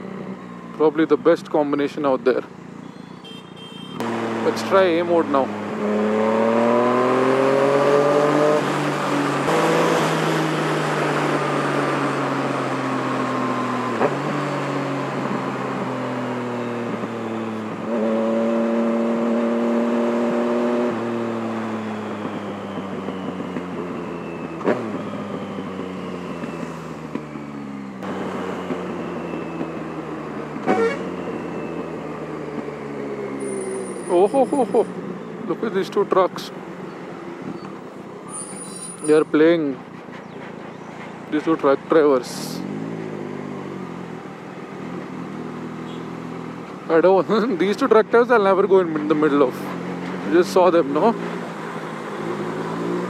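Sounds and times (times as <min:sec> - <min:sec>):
motorcycle engine revving: 0:04.0 - 0:38.0, 0:48.6 - 0:53.0.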